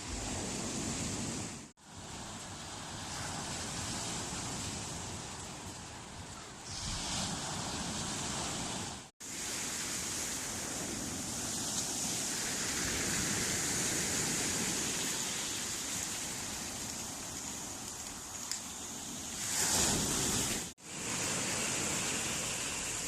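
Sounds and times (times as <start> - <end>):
waves washing on shore: 0.0 - 23.0.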